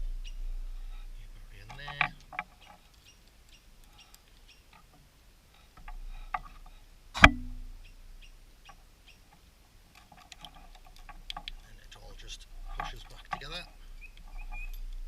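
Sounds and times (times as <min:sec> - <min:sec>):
sharp click and thud: 0:07.2 - 0:07.8.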